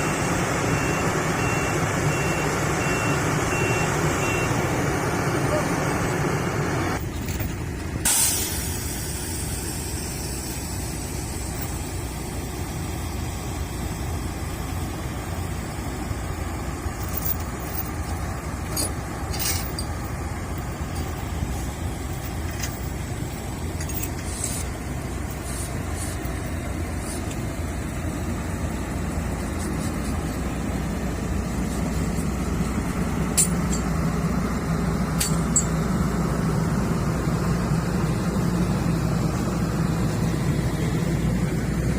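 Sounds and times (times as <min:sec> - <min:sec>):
diesel machinery droning: 0:00.0 - 0:41.9
hissing air burst: 0:08.0 - 0:12.0.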